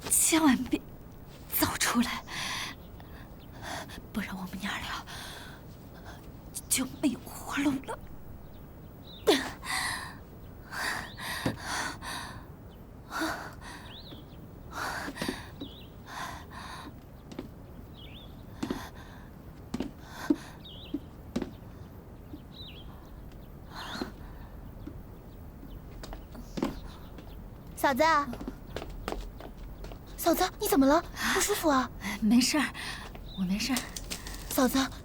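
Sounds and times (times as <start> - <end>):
small birds chirping: 0.0 - 35.0
woman breathing heavily: 5.1 - 6.3, 9.3 - 17.1, 18.4 - 20.8, 22.9 - 24.8.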